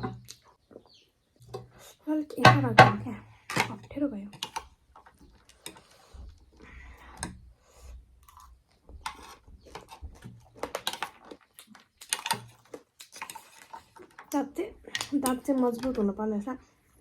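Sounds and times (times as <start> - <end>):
chewing crunchy food: 4.3 - 16.0.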